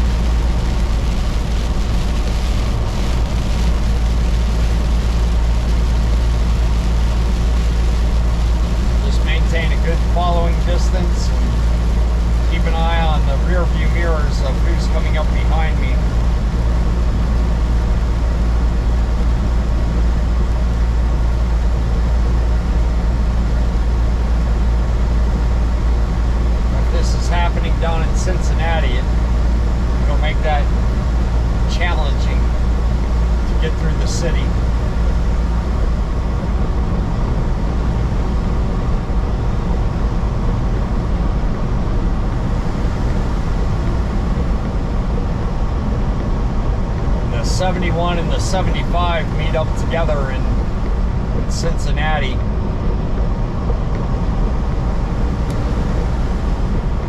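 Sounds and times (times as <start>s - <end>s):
truck engine and road rumble: 0.0s - 57.0s.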